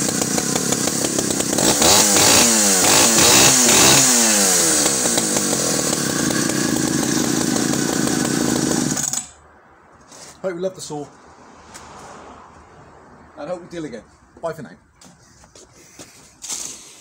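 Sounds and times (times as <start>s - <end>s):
chainsaw engine revving and idling: 0.0s - 9.3s.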